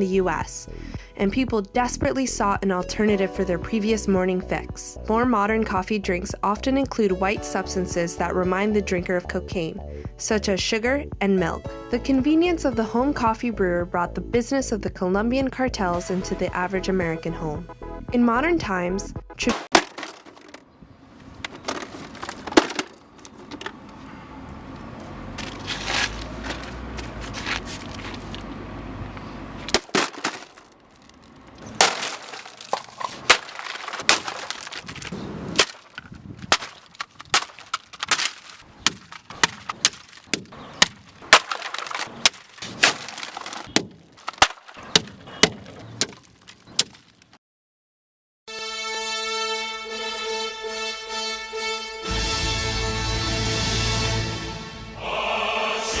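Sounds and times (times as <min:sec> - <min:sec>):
plastic and glass breaking: 0:19.5 - 0:20.7, 0:21.4 - 0:23.7, 0:29.7 - 0:47.4.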